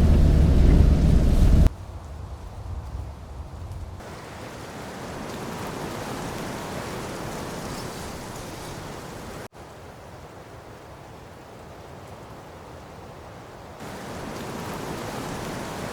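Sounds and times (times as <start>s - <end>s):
rain rushing: 0.0s - 1.8s, 4.0s - 9.5s, 13.8s - 15.9s.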